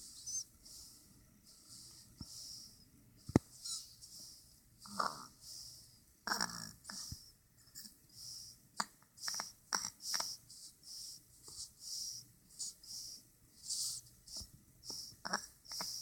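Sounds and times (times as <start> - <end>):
wheezy snoring: 4.8 - 7.3, 14.9 - 16.0.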